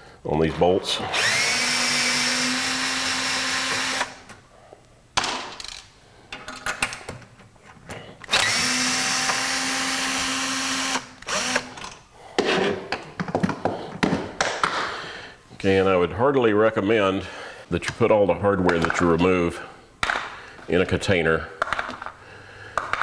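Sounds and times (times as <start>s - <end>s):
power drill whining: 1.1s - 4.3s, 8.2s - 11.9s.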